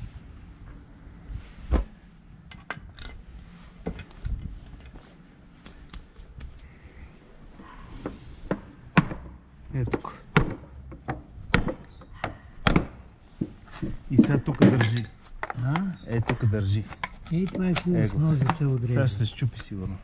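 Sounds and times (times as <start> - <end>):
plastic and metal parts knocking: 8.5 - 18.8.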